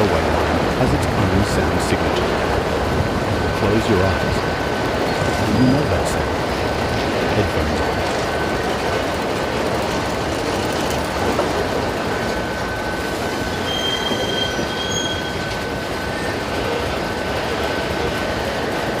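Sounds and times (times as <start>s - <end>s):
train wheels rumbling on rails: 0.0s - 19.0s
wheel squealing on rail: 10.8s - 18.2s.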